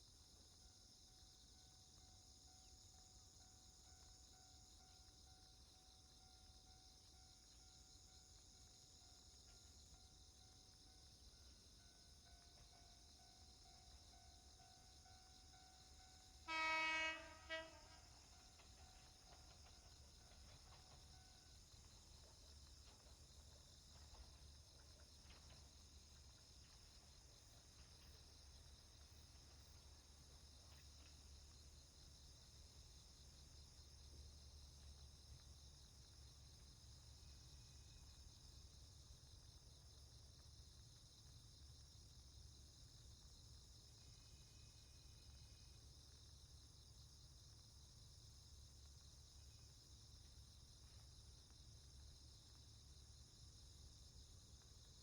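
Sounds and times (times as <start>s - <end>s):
train horn blast: 16.4s - 18.4s.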